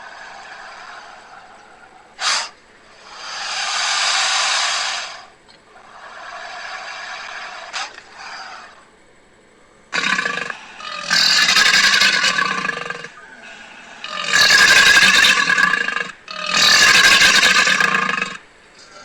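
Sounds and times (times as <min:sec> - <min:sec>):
crocodile hissing: 0:00.0 - 0:08.8, 0:09.9 - 0:18.5.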